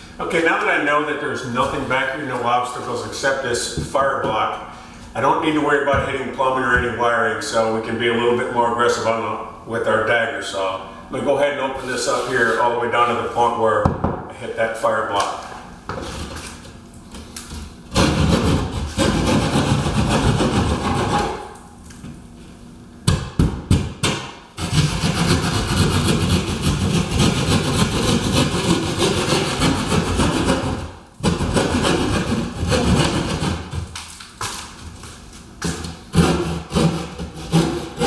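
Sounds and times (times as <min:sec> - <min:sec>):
hand saw cutting wall: 0:17.9 - 0:21.6, 0:24.0 - 0:34.1, 0:35.6 - 0:38.0.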